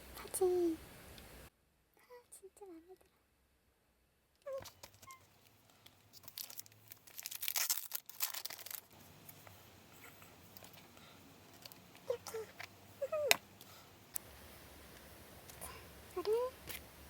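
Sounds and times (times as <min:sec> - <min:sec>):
plastic packaging tearing and crinkling: 0:05.9 - 0:09.4.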